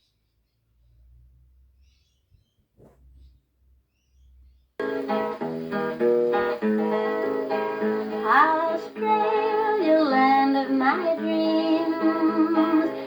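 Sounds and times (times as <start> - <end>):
gramophone record playing guitar music: 4.8 - 13.0.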